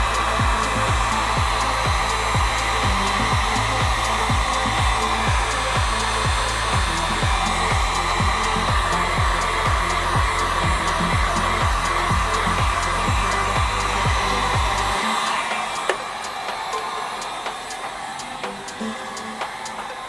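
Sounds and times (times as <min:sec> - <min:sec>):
background music with deep thumps: 0:00.0 - 0:15.2
heat gun blowing: 0:00.0 - 0:20.0.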